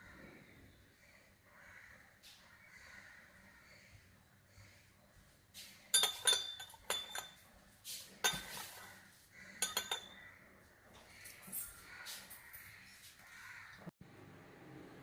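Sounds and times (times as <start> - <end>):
metal spoon clinking against cup: 5.9 - 7.4, 8.2 - 8.9, 9.6 - 10.2.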